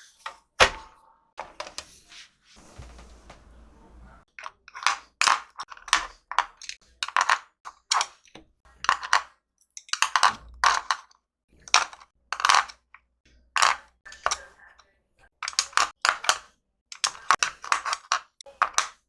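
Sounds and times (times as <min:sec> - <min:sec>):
wooden pencils clacking: 0:04.4 - 0:12.9, 0:13.6 - 0:14.5, 0:15.4 - 0:19.0.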